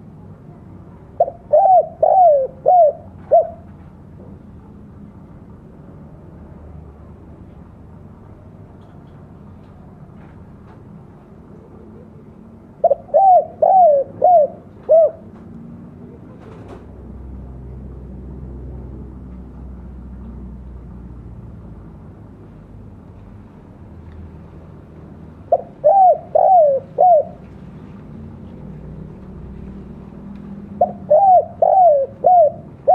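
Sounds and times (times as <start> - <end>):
dove cooing: 1.2 - 3.8, 11.5 - 15.4, 25.4 - 27.6, 30.7 - 32.9.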